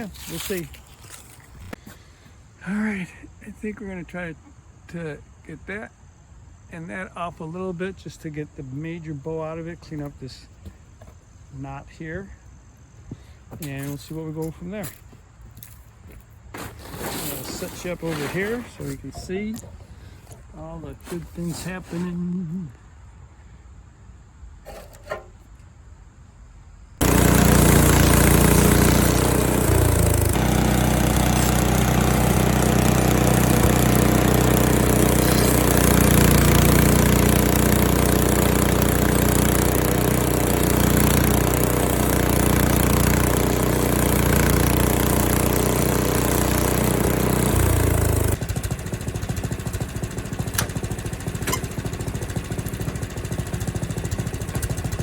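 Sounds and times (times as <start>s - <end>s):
band blade sawing through log: 0.0s - 1.8s, 16.6s - 22.6s, 24.6s - 25.4s, 27.0s - 40.9s
sawmill gas engine running: 0.0s - 4.4s, 16.6s - 22.5s, 24.6s - 25.4s, 27.0s - 55.0s.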